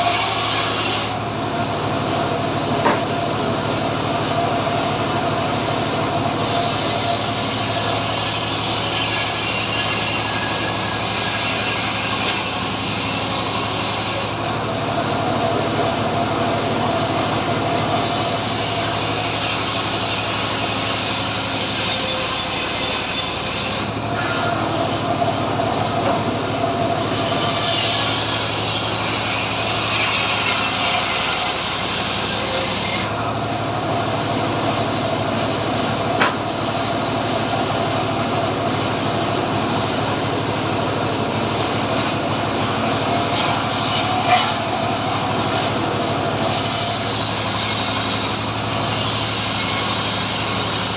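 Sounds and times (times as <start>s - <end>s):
saw blade cutting log: 0.0s - 1.2s, 6.2s - 15.5s, 17.8s - 25.0s, 26.9s - 34.9s, 35.5s - 37.8s, 38.4s - 50.9s
sawmill engine running: 0.0s - 50.9s.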